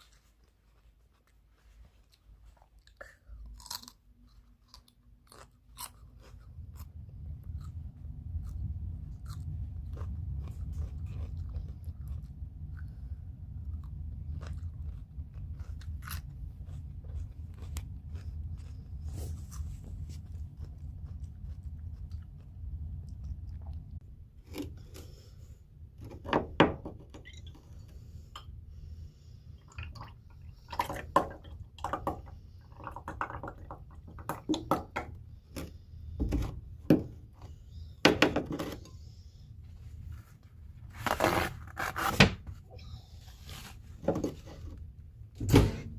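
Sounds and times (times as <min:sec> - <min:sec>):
chewing and crunching food: 0:00.0 - 0:26.0.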